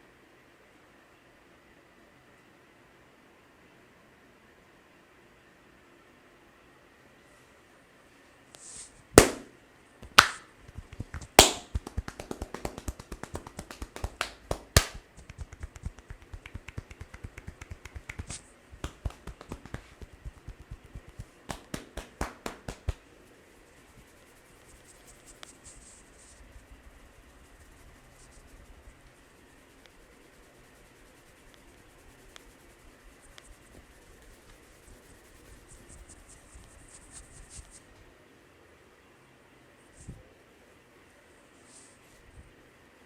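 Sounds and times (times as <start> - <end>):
sharp cracks from hands: 9.2 - 23.0.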